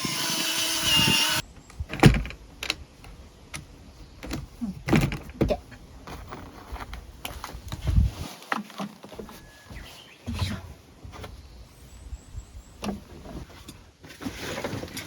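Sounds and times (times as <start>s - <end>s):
power tool whirring: 0.0s - 1.4s.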